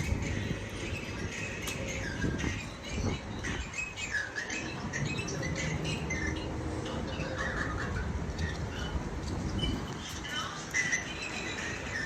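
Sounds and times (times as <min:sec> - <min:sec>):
high chirping calls: 0:00.0 - 0:12.0.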